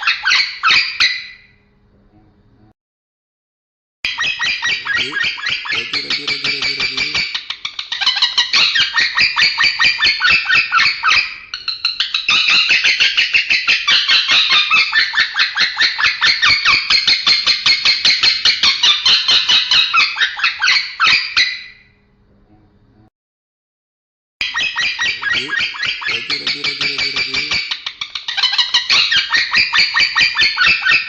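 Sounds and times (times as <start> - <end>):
lovebird chattering song: 4.1 - 21.4, 24.4 - 31.0.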